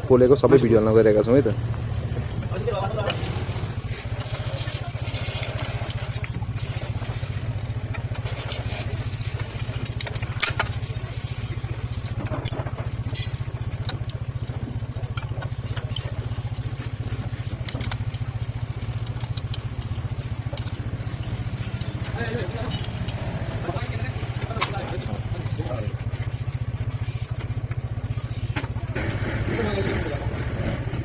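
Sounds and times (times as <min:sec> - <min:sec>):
motorcycle engine idling: 0:00.0 - 0:31.0
metallic tool clicks and clatter: 0:07.8 - 0:26.6.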